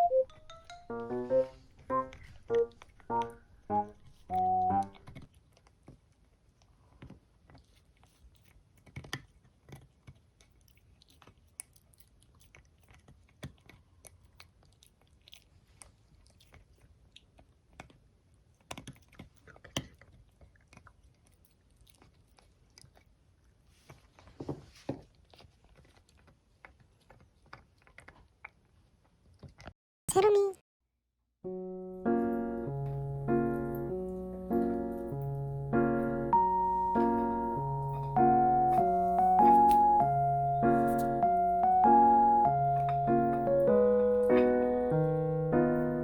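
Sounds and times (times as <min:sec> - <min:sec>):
dog chewing and gnawing: 0:05.0 - 0:29.7.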